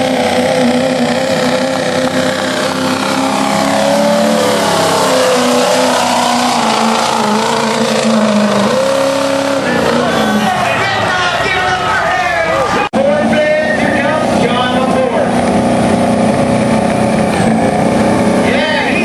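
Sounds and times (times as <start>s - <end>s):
pickup truck engine running: 0.0s - 11.0s.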